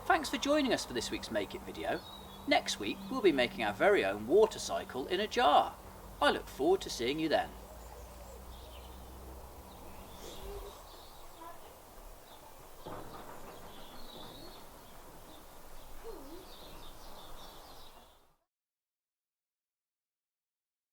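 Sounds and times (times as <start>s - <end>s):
low cooing calls: 7.6s - 11.7s, 13.6s - 17.6s.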